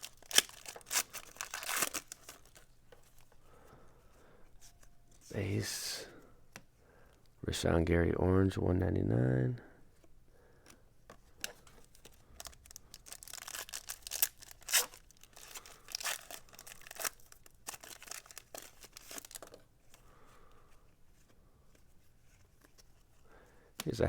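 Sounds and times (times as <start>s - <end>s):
foil wrapper tearing and crinkling: 0.0s - 2.7s, 11.8s - 19.6s.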